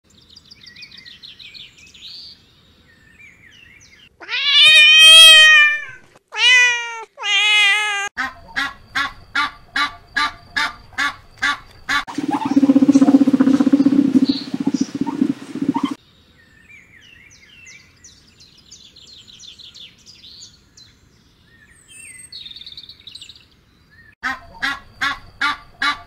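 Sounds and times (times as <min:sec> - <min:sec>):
cat meowing: 0:04.2 - 0:08.1
faint chirps: 0:12.1 - 0:16.0
low rough animal call: 0:12.1 - 0:16.0.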